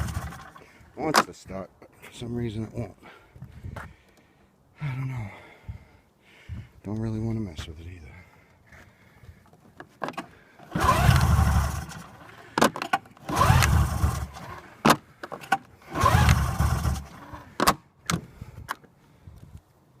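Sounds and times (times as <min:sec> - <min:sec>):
engine cranking without starting: 0:00.0 - 0:00.7, 0:10.6 - 0:17.6.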